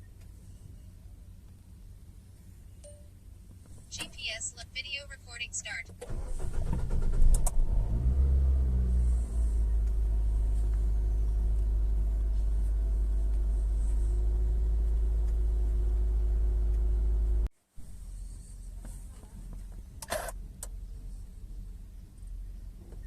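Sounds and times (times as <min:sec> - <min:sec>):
car engine starting and idling: 0:03.4 - 0:23.0.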